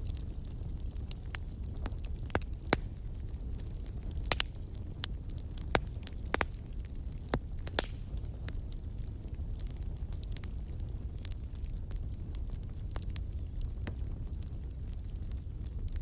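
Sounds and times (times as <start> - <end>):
fire burning with low rumble: 0.0 - 16.0
fire crackling and popping: 0.0 - 16.0.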